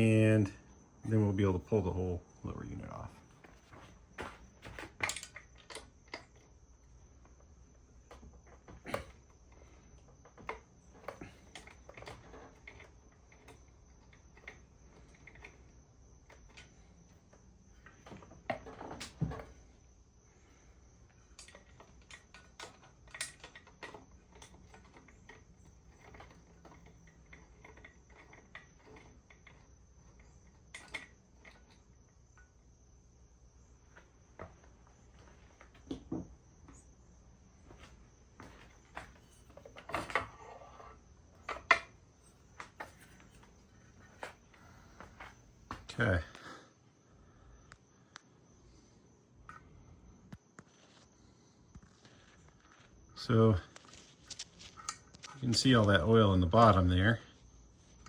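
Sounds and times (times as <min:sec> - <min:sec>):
faint steady high tone: 0:00.0 - 0:03.2.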